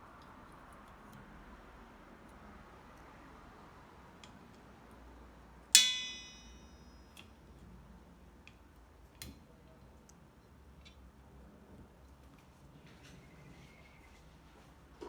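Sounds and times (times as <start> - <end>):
sharp metallic clink ringing: 5.8 - 7.2.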